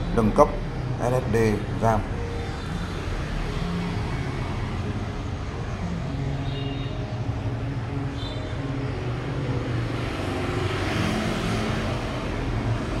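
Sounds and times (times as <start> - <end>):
road traffic rumble: 0.0 - 13.0.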